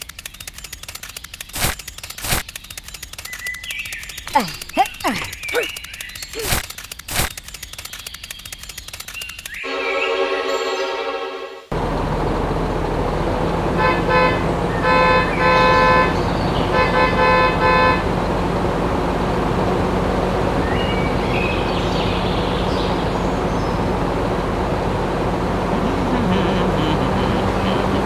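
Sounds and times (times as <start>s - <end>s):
horn honking short toots: 25.4s - 28.0s
steady hum: 25.4s - 28.0s.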